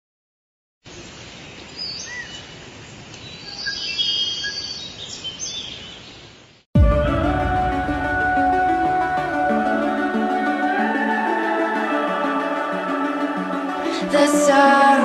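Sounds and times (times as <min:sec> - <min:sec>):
outdoor background hiss: 0:00.8 - 0:06.6
birds chirping and whistling: 0:01.8 - 0:02.5, 0:03.2 - 0:06.3.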